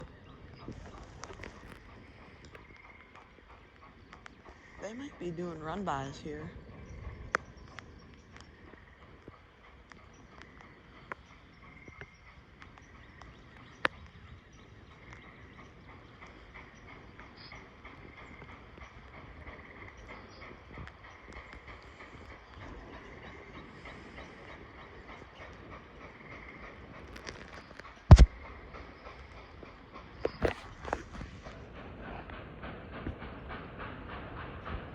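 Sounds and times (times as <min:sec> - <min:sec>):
raindrops ticking: 0:00.0 - 0:31.6
loud thump: 0:28.1 - 0:28.4.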